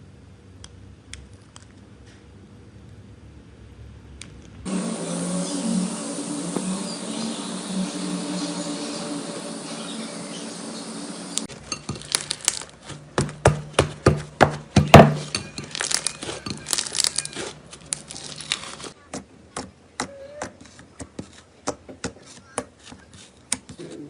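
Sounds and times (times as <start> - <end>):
steady low hum: 0.0 - 12.1
slime crackling and popping: 12.0 - 12.9, 15.6 - 19.0.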